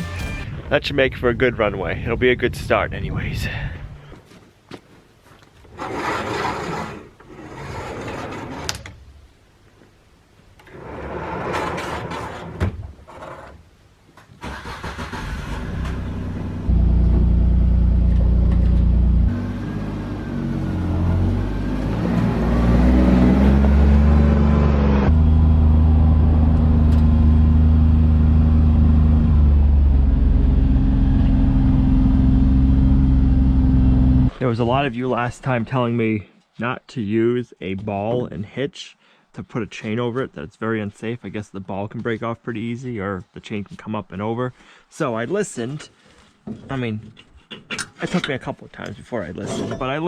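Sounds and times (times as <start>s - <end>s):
rushing scraping noise: 5.7s - 8.8s, 10.7s - 13.5s
tractor engine starting and running: 14.4s - 34.4s.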